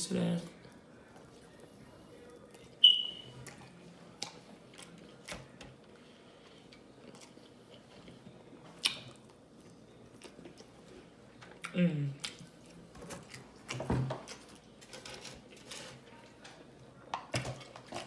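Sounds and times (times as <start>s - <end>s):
chewing and biting food: 3.4s - 10.8s.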